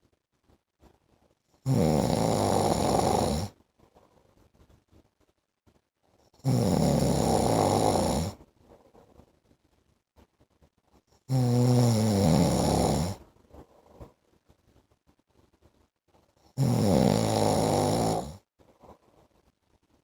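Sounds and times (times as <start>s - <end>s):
man snoring: 1.7s - 3.5s, 6.4s - 8.4s, 11.3s - 13.2s, 16.6s - 18.4s.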